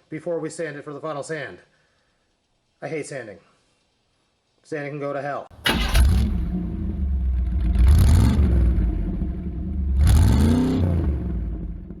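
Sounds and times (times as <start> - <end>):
car engine revving: 5.6 - 12.0.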